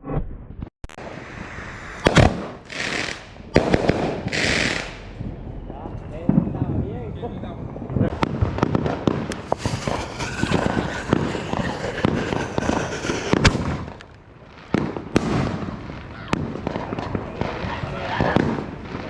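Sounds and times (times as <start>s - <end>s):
fireworks crackling pops: 0.9s - 5.2s
fireworks bangs: 1.0s - 5.4s, 8.2s - 14.0s.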